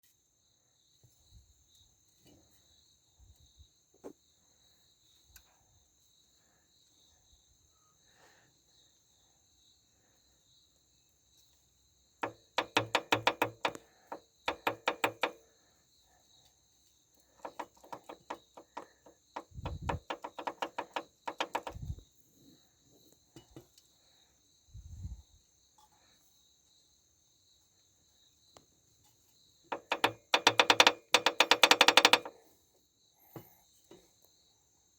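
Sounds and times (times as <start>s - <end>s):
crickets chirping: 0.0s - 34.9s
car engine knocking when revved: 12.2s - 15.4s, 17.4s - 22.0s, 29.7s - 32.4s.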